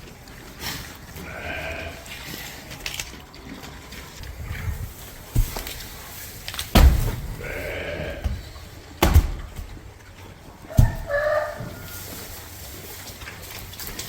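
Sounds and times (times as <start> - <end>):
sheep bleating: 1.2 - 2.2, 7.4 - 8.6
sharp thump: 6.7 - 7.4, 9.0 - 9.6.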